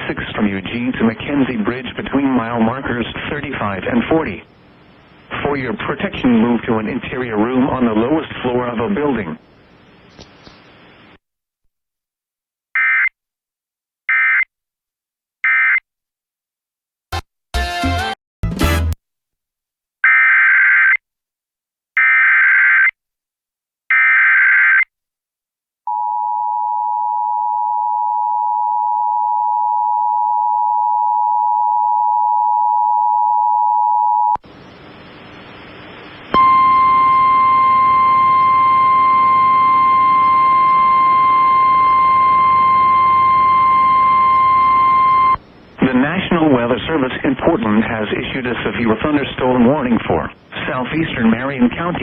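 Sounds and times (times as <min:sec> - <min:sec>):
faint hum: 0:00.0 - 0:11.2, 0:25.9 - 0:52.0
steady warning tone: 0:36.3 - 0:45.4
two-tone attention signal: 0:36.4 - 0:45.4.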